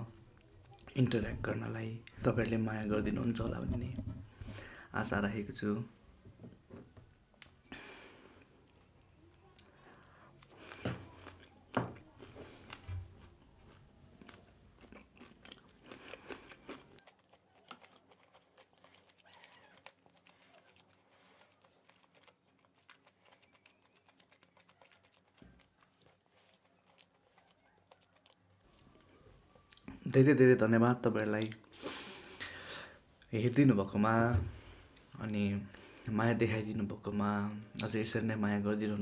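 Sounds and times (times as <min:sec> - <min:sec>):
chewing and mouth clicks: 0:07.4 - 0:30.1.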